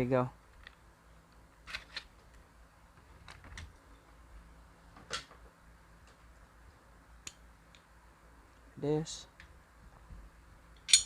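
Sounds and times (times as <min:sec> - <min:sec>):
pistol parts clicking: 0:10.8 - 0:11.0.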